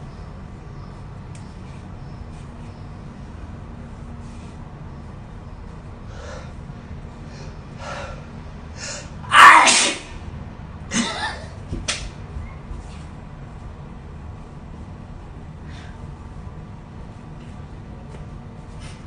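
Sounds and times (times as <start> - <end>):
quick breaths: 6.0 - 9.2, 15.6 - 16.1
person sneezing: 9.3 - 10.1, 10.9 - 11.5.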